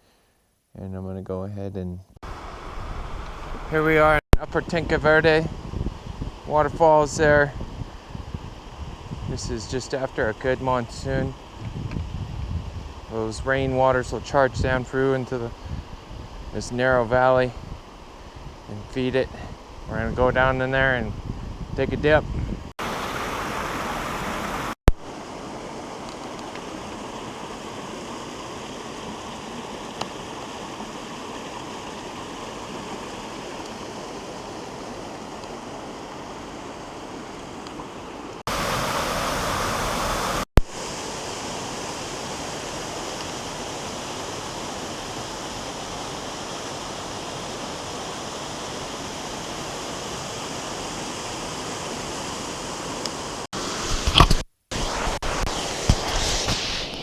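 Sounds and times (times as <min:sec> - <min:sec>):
waterfall and creek rushing: 0:02.2 - 0:11.6, 0:22.8 - 0:57.0.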